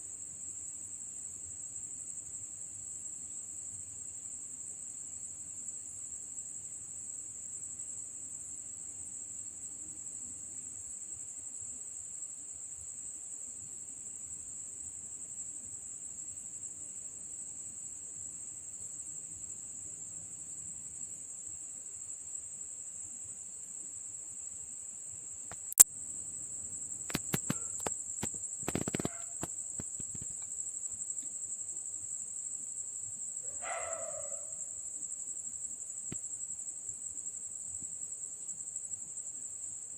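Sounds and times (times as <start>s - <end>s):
crickets chirping: 0.0s - 39.9s
sharp clicks: 25.5s - 25.8s, 27.1s - 30.4s.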